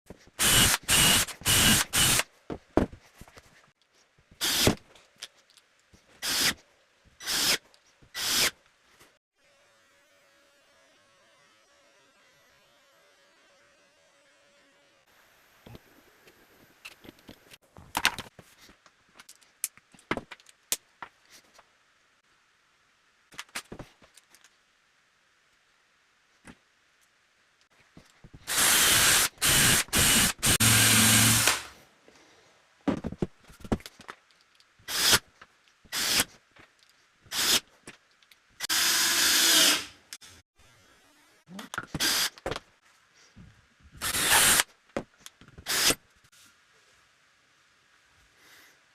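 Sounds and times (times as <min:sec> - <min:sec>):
power drill cutting into wood: 0:00.4 - 0:02.2, 0:04.4 - 0:04.8, 0:06.2 - 0:06.6, 0:07.2 - 0:07.6, 0:08.2 - 0:08.5, 0:28.5 - 0:31.8, 0:34.9 - 0:35.2, 0:35.9 - 0:36.2, 0:37.3 - 0:37.6, 0:38.6 - 0:39.9, 0:42.0 - 0:42.4, 0:44.0 - 0:44.6, 0:45.7 - 0:46.0.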